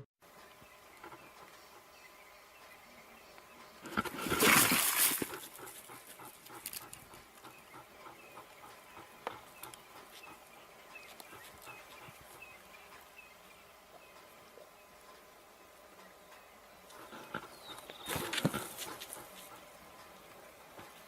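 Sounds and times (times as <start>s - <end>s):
faint clicks: 8.4s - 10.4s.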